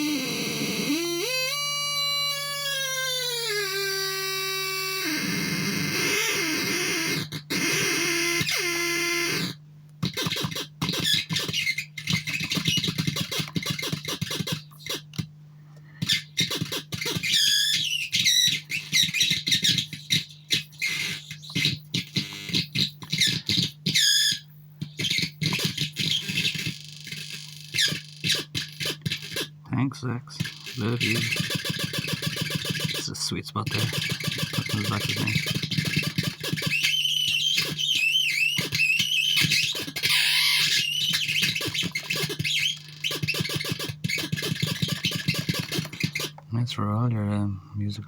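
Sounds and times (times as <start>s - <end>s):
buzzy synthesizer tone: 0.0s - 8.4s, 29.7s - 39.6s
stuttering synthesizer noise bursts: 29.7s - 36.5s.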